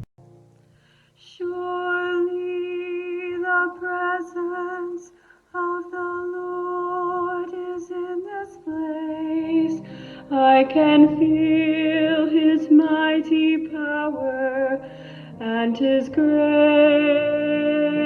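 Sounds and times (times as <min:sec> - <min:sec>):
woman singing a slow hymn: 0:01.2 - 0:18.0.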